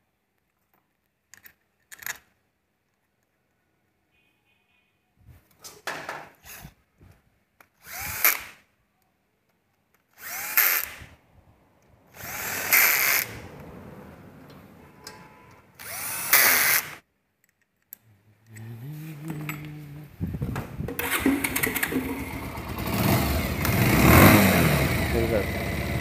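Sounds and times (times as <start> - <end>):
tools clicking: 0.4 - 3.3, 9.8 - 11.1, 11.8 - 13.4, 15.0 - 19.8
power tool whining: 7.8 - 8.5, 10.2 - 11.1, 12.1 - 13.8, 15.8 - 17.0, 18.6 - 26.0.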